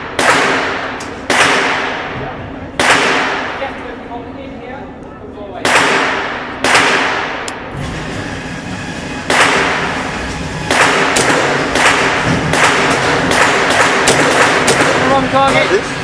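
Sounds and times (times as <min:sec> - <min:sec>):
rifle gunshots with echo: 0:00.0 - 0:03.8, 0:05.6 - 0:07.7, 0:09.3 - 0:10.0, 0:10.6 - 0:15.2.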